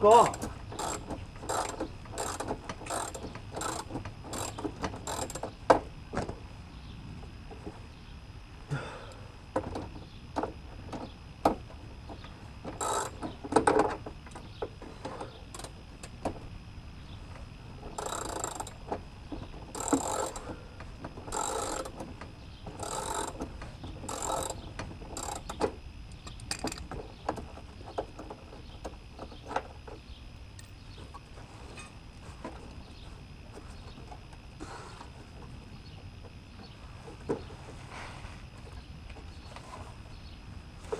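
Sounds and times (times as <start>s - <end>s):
ratchet wrench ratcheting: 0.1s - 5.5s, 12.8s - 13.8s, 17.9s - 18.8s, 19.7s - 20.5s, 21.3s - 22.0s, 22.7s - 23.4s, 24.0s - 26.9s
tools clicking and knocking on metal: 0.1s - 6.4s, 17.9s - 30.0s.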